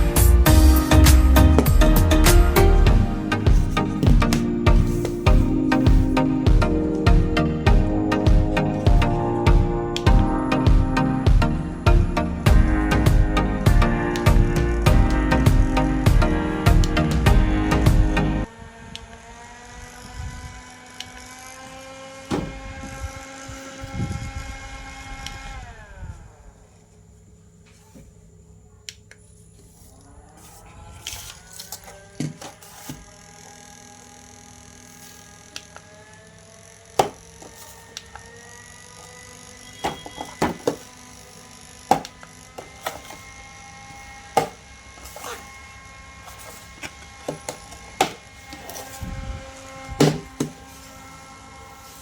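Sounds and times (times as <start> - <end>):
toy motor whirring: 18.4 - 26.4, 29.6 - 52.0.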